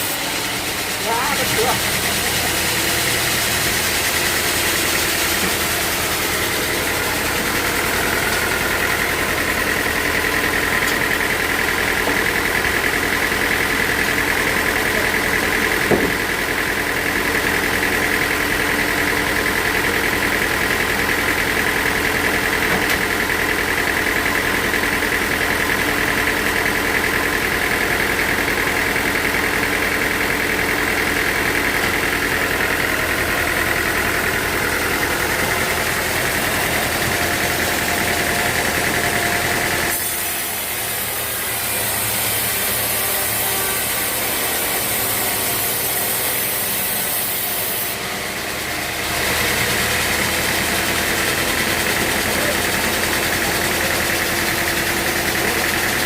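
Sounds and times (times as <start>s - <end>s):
sawmill machinery running: 0.0s - 56.0s
single knock: 15.9s - 16.2s.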